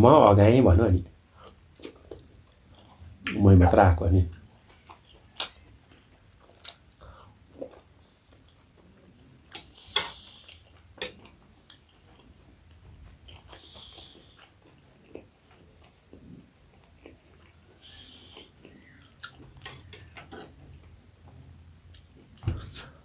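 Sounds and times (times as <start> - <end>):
mouth clicks and smacks: 6.5 - 6.9, 18.3 - 20.5.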